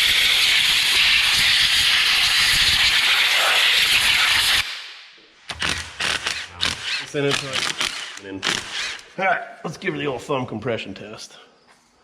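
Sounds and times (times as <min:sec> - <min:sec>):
air blow gun hissing: 0:00.0 - 0:04.7.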